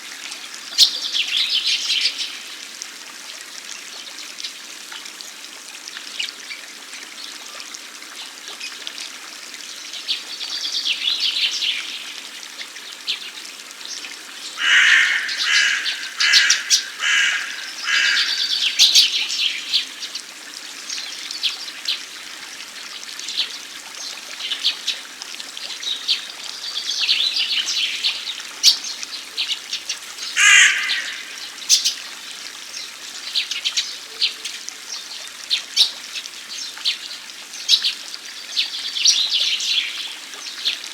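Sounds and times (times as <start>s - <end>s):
water fountain splashing: 0.0s - 40.9s
birds calling: 14.4s - 20.2s, 26.0s - 32.0s.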